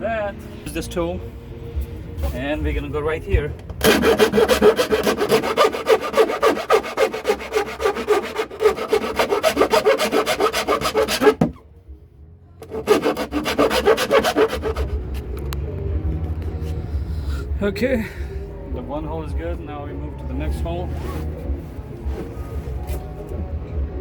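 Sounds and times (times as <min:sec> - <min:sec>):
hand cutting tool strokes: 0:03.8 - 0:11.6, 0:12.6 - 0:15.0.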